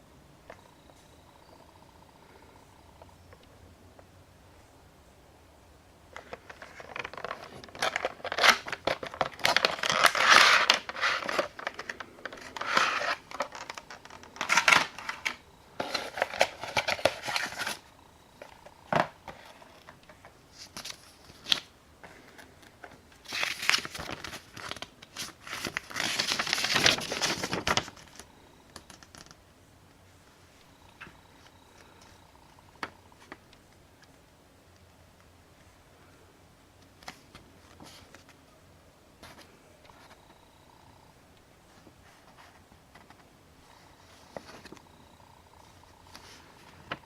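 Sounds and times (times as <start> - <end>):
packaging being torn open: 6.8 - 17.8.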